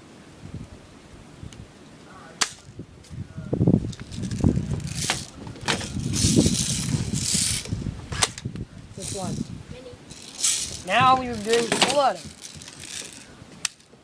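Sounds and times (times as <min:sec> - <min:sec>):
rustling: 0:03.0 - 0:13.9.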